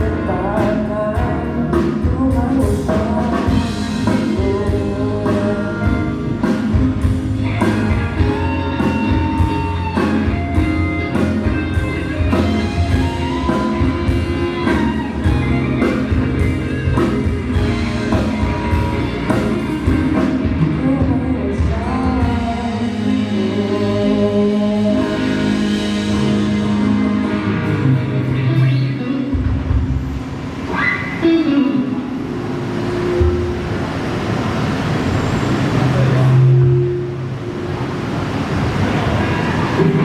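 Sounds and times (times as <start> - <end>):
person singing: 0.0 - 7.0, 12.3 - 29.5
rock song with drums and guitar: 0.0 - 31.6.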